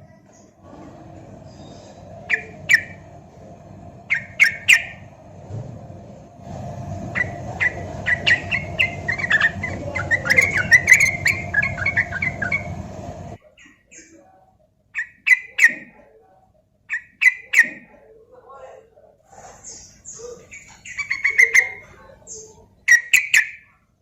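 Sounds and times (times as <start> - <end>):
bird singing bubbly notes: 1.5 - 3.2, 4.0 - 5.2, 7.0 - 13.4.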